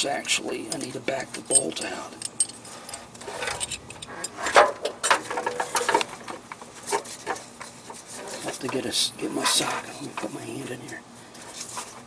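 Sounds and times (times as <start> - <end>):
metal tools clinking: 0.6 - 6.0.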